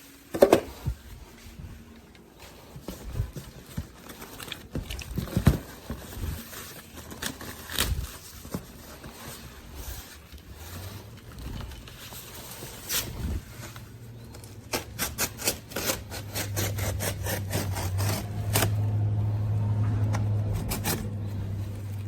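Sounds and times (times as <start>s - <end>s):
rustling and scraping: 0.0s - 22.0s
knocks and thumps in cardboard box: 2.8s - 6.8s.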